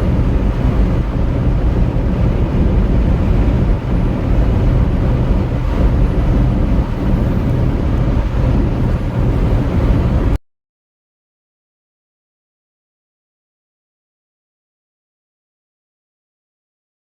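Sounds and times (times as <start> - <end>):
diesel engine drone: 0.0 - 10.4
road and wind noise: 0.0 - 10.4.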